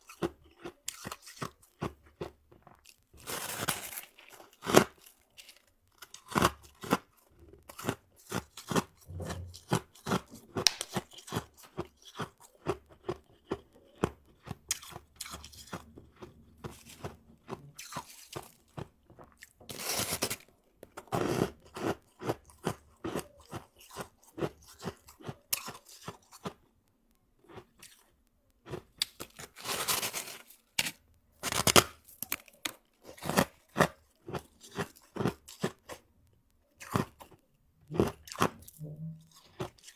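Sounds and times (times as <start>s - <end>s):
ice being chewed crunching: 0.0s - 26.8s, 27.4s - 39.9s.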